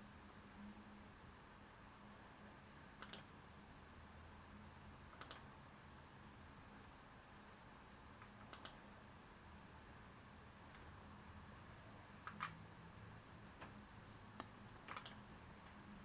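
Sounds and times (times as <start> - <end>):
computer mouse double clicks: 3.0 - 3.3, 5.2 - 5.4, 8.5 - 8.8, 14.9 - 15.2.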